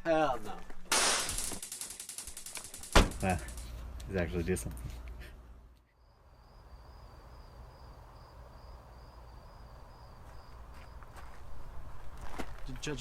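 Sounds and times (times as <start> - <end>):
cricket chirping: 5.9 - 12.0.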